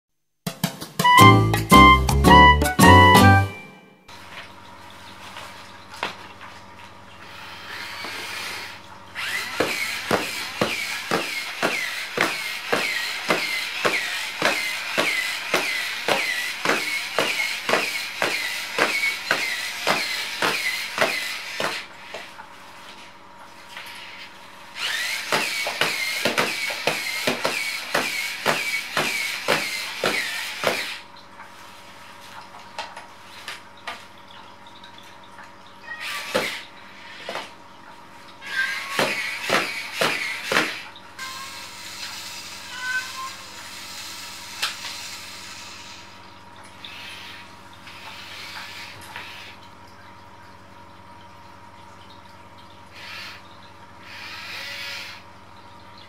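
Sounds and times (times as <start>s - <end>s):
small electric motor whirring: 7.3s - 21.8s, 24.0s - 31.0s, 54.0s - 55.2s.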